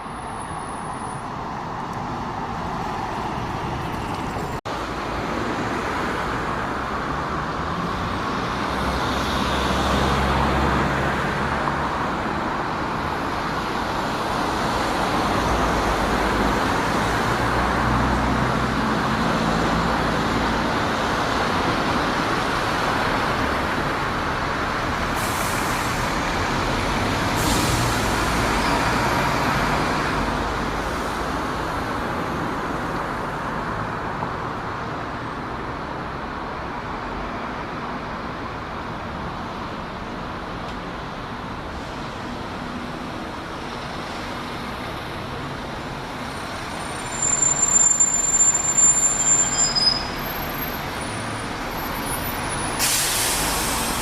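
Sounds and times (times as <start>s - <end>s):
road traffic: 0.0s - 54.0s
air brake hisses: 25.1s - 26.1s, 27.3s - 28.2s, 52.4s - 54.0s.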